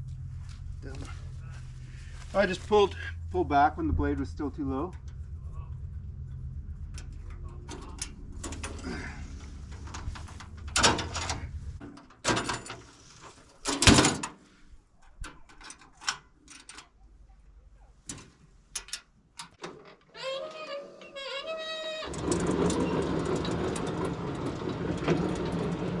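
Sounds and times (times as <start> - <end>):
metallic clanks and knocks: 4.9 - 12.9
sawmill engine running: 20.4 - 26.0.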